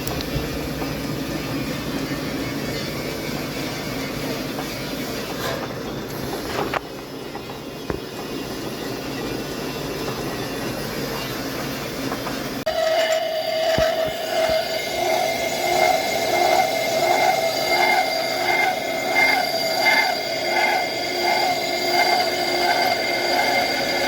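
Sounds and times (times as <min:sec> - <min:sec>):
metal lathe running: 0:00.0 - 0:24.0.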